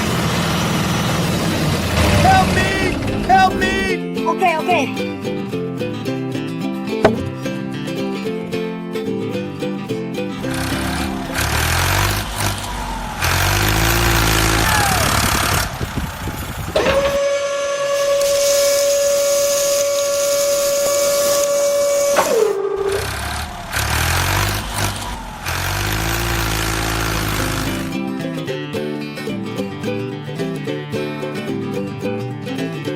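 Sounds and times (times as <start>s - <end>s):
vehicle engine revving: 0.0s - 3.9s, 10.4s - 17.2s, 20.6s - 28.0s
long steady horn blast: 1.9s - 3.9s, 10.4s - 27.9s.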